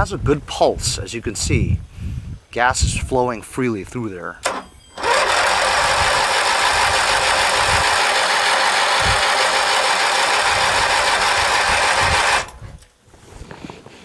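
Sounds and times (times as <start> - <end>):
engine cranking without starting: 4.4 - 12.8.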